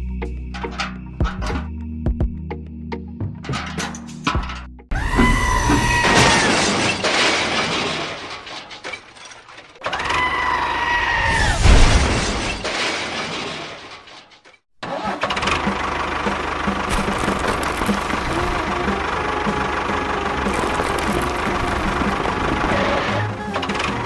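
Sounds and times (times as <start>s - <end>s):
rattling noise: 0.5s - 1.7s, 3.3s - 10.0s, 15.2s - 24.0s
motor running with regular beat: 15.7s - 22.8s.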